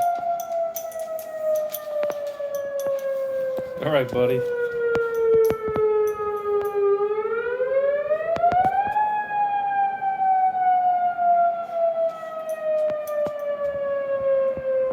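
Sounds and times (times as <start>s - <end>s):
warning siren wailing: 0.0s - 14.9s
sharp clicks: 8.3s - 9.0s.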